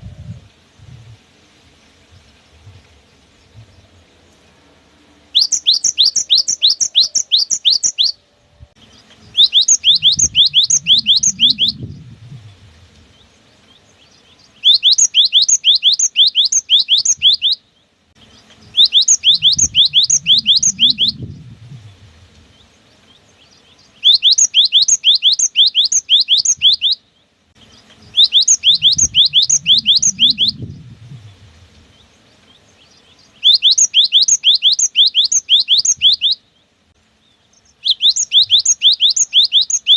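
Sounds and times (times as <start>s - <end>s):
bird singing sharp whistled notes: 5.3s - 8.3s, 8.9s - 13.3s, 14.4s - 17.6s, 18.6s - 22.7s, 23.4s - 27.0s, 27.6s - 32.2s, 32.8s - 36.4s, 37.6s - 39.9s
low rumble: 8.3s - 13.6s, 19.4s - 23.0s, 28.8s - 32.3s.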